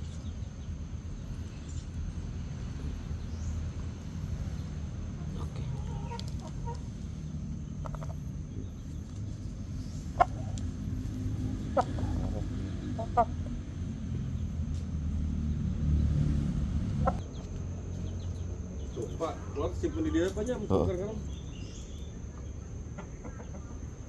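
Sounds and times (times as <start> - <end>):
steady low rumble: 0.0 - 24.0
chicken calling: 4.5 - 14.1, 16.9 - 17.2.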